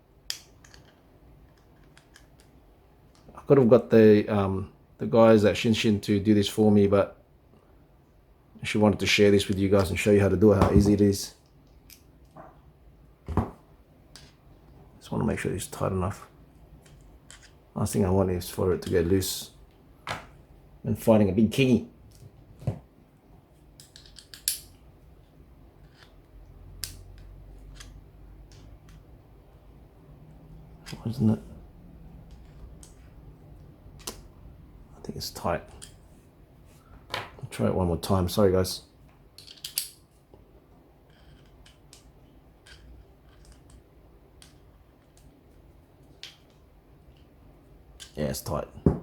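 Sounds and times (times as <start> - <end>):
small metal parts clicking: 0.3 - 3.2, 23.8 - 24.8, 25.8 - 26.2, 26.8 - 29.0, 39.4 - 40.0, 41.1 - 43.8.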